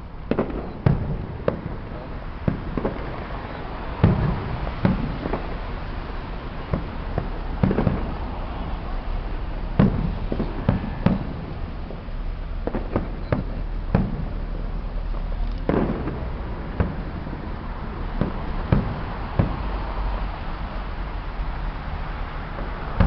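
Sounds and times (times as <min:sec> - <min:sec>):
firework bangs: 0:00.0 - 0:23.0
firework crackle: 0:00.0 - 0:23.0.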